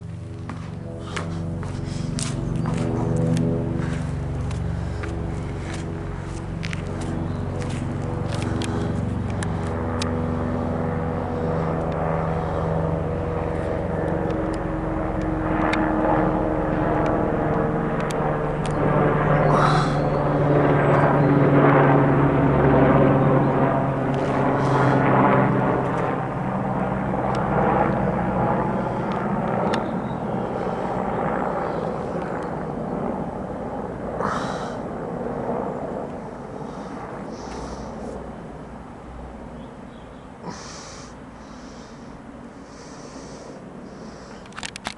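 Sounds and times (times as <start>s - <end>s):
helicopter flying overhead: 0.0s - 44.9s.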